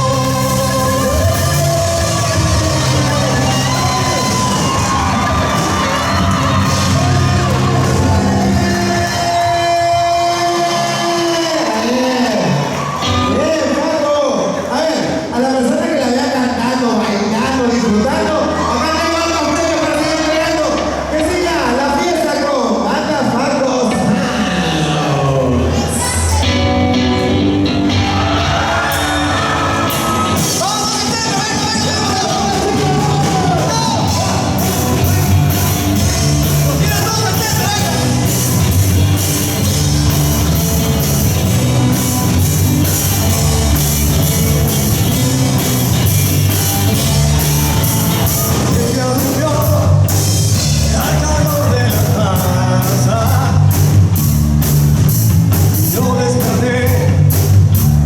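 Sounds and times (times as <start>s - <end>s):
drum kit: 0.0s - 11.6s, 26.4s - 58.0s
lead vocalist singing: 0.0s - 11.8s, 50.6s - 53.9s
electric guitar: 0.0s - 13.9s, 23.9s - 58.0s
bass guitar: 0.0s - 14.0s, 14.6s - 58.0s.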